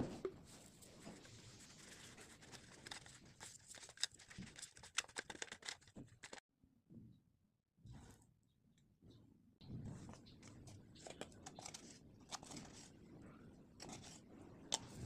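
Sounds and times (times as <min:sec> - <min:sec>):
faint handling clicks and crackles: 0:01.8 - 0:06.4.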